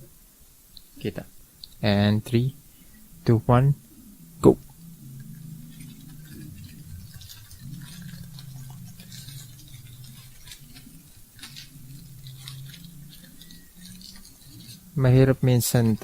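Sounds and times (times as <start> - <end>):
steady low hum: 0.0 - 16.0
packaging crinkling and rustling: 5.2 - 16.0.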